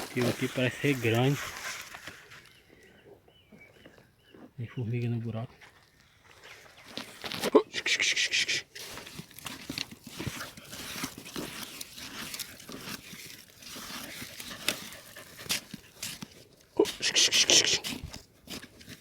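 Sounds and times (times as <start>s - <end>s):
dog scuffling at a burrow: 0.0s - 2.5s, 8.6s - 19.0s
dog panting: 14.2s - 16.2s.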